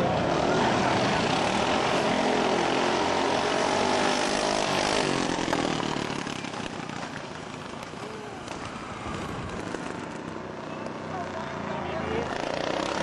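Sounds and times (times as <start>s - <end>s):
racing lawnmower engines at full throttle: 0.0s - 13.0s.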